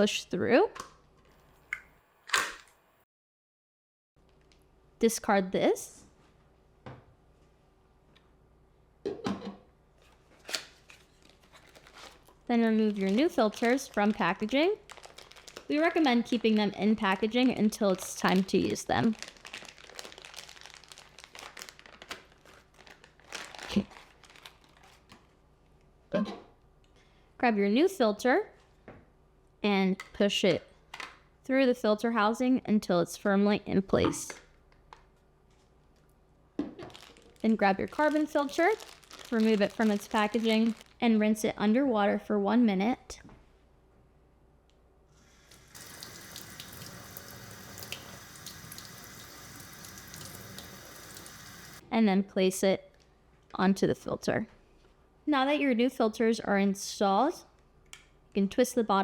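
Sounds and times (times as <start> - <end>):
packaging crinkling: 10.4 - 16.7, 17.8 - 25.2, 36.9 - 41.0
water splashing over filter cartridge: 45.8 - 51.8.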